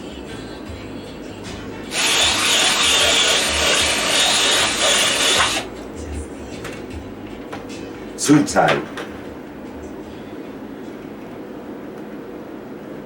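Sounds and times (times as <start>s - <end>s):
power drill boring through plastic: 1.9s - 5.7s.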